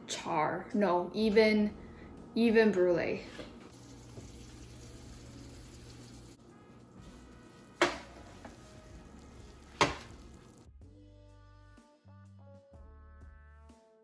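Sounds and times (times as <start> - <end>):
sharp knocks of hard objects: 9.8 - 10.2.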